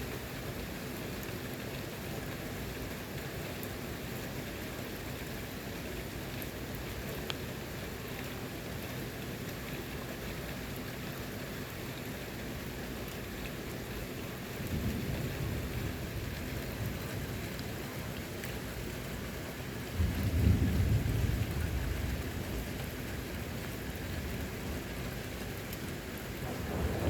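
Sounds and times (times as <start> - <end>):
steady rain falling: 0.0 - 27.0
low rumble of thunder: 14.6 - 17.8, 19.8 - 25.1, 26.2 - 27.0.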